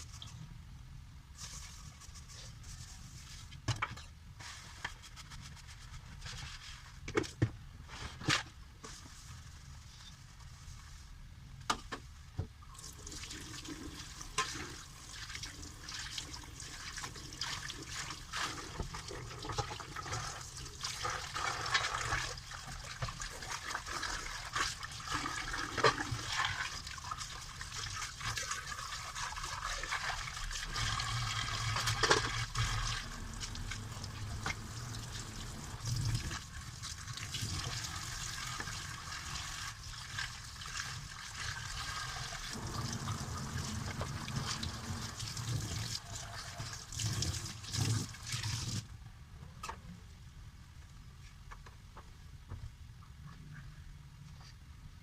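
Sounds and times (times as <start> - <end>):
tap water running into sink: 12.8 - 48.8.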